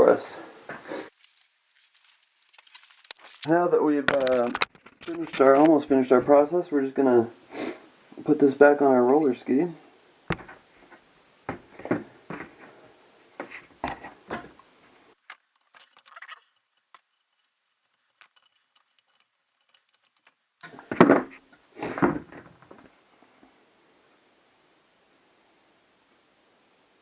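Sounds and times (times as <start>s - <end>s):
roller ski wheel knocks and clicks: 10.3s - 10.6s, 15.2s - 22.9s.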